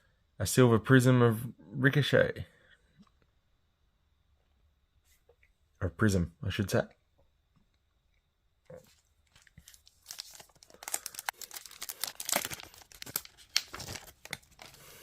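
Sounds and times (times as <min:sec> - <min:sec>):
wrapper tearing and crinkling: 0:09.3 - 0:14.9.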